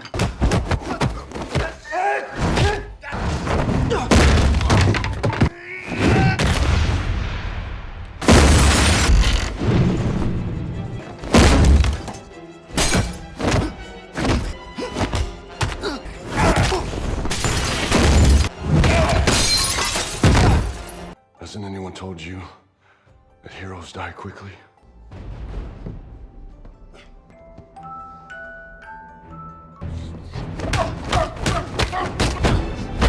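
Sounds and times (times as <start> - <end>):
heavy hits and thuds: 0.0 - 1.8, 2.4 - 7.1, 11.2 - 15.8
glass shattering: 8.2 - 9.6, 11.3 - 13.4, 17.2 - 21.2.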